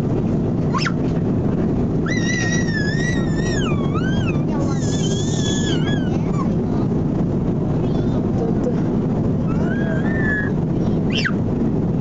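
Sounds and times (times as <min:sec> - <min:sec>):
airliner cabin drone: 0:00.0 - 0:12.0
child squealing: 0:00.7 - 0:01.0, 0:02.0 - 0:06.5, 0:09.5 - 0:11.4.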